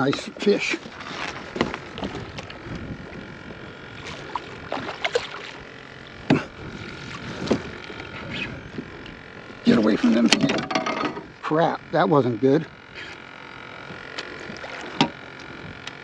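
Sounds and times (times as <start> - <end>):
knocks and clatter in kayak: 0.1 - 2.9, 10.2 - 11.3, 14.2 - 15.2.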